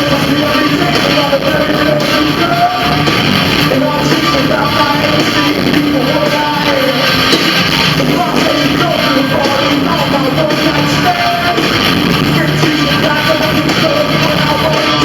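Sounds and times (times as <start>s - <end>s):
live rock band playing: 0.0s - 15.0s
person singing: 0.0s - 15.0s.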